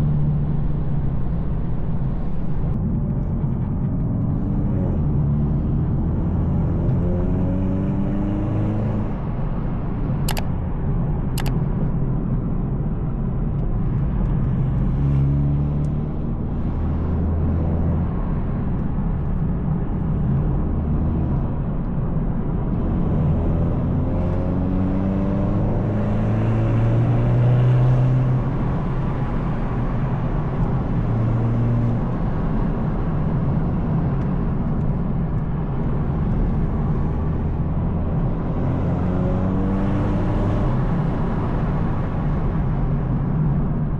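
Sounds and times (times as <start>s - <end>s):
sharp clicks: 10.2s - 10.5s, 11.3s - 11.6s.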